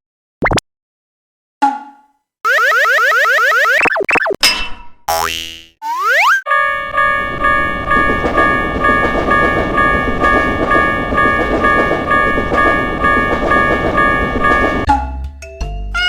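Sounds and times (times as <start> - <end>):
level-crossing alarm bell ringing: 6.5 - 14.9
passing train rumble and clatter: 7.2 - 14.9.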